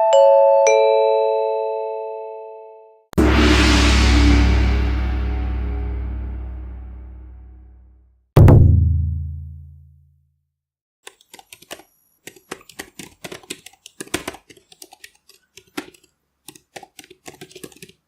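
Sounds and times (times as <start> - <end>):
deep booming hit: 3.2 - 9.5
keyboard typing: 11.0 - 18.0.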